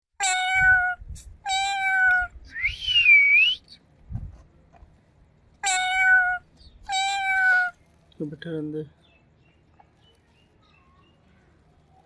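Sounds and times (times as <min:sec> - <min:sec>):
cat meowing: 0:00.2 - 0:02.4, 0:05.6 - 0:07.8.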